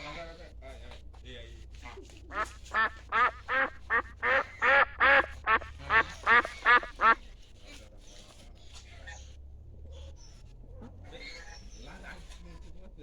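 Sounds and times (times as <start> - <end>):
duck quacking loudly: 2.3 - 7.2.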